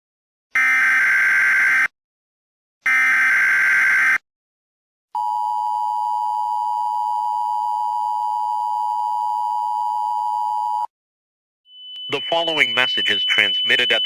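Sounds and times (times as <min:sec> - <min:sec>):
two-tone attention signal: 0:11.8 - 0:14.0
digital data tones: 0:12.0 - 0:14.0.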